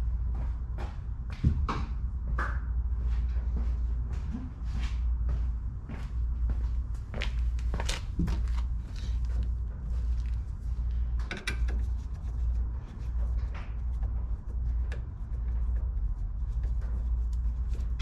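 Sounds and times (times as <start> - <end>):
low pulsing rumble: 0.0 - 18.0.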